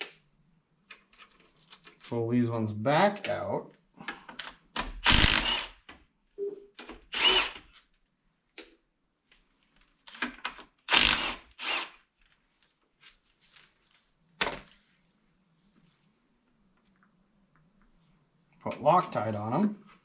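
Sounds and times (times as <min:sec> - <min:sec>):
power tool removing bolts: 0:04.8 - 0:05.9, 0:06.8 - 0:07.7, 0:10.1 - 0:12.0.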